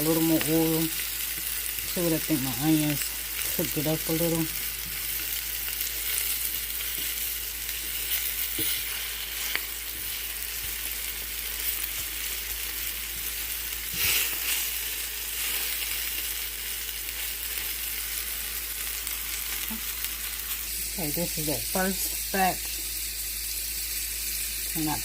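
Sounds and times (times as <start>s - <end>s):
fish frying in oil sizzling: 0.0s - 25.0s.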